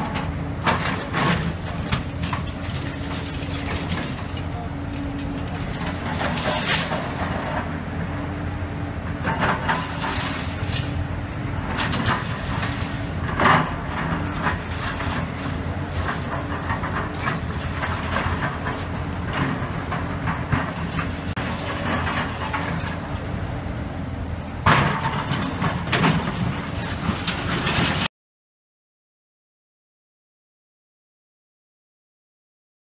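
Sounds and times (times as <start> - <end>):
excavator diesel engine: 0.0 - 28.1
bucket scraping through rubble: 0.7 - 4.8, 5.4 - 7.6, 9.4 - 11.0, 11.7 - 23.0.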